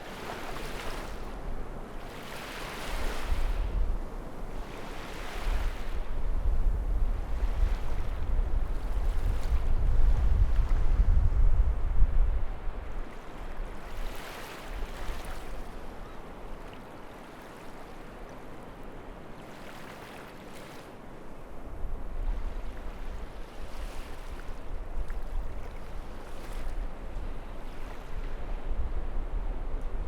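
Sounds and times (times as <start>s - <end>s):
sea waves breaking on a beach: 0.0s - 30.0s
wind buffeting microphone: 5.4s - 13.8s.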